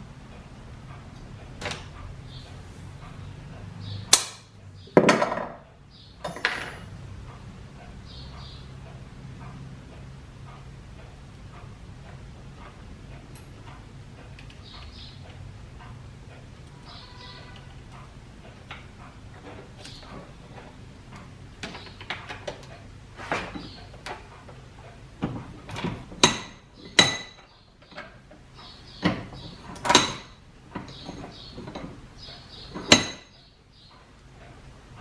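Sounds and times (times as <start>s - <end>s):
steady low hum: 0.0s - 35.0s
loud ringing knocks: 4.2s - 5.6s
metal tools clinking: 6.2s - 6.9s.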